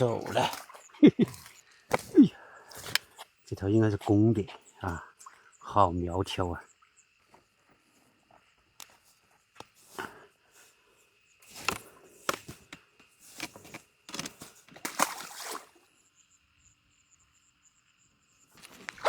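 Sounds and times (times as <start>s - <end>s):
fish splashing and flapping: 0.0s - 3.0s, 13.3s - 15.8s
faint insect chirp: 0.0s - 19.0s.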